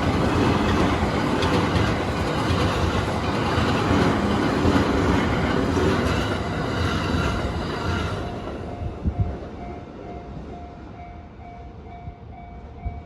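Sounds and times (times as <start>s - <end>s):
train wheels clattering on rails: 0.0s - 9.9s
crossing warning bell pulsing: 7.9s - 13.0s.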